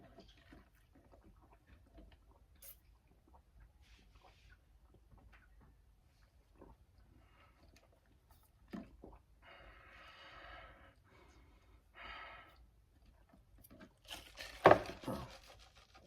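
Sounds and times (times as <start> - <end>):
rustling or slurping: 0.0 - 9.9, 13.0 - 16.0
breathing through the nose: 9.4 - 12.6.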